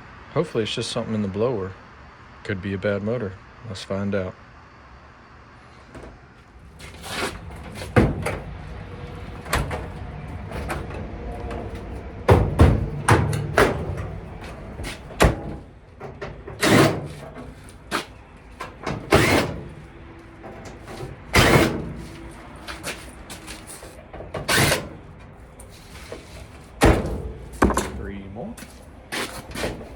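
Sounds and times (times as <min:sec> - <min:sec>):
sheet-metal knocks and scrapes: 0:06.8 - 0:28.1, 0:28.7 - 0:29.9.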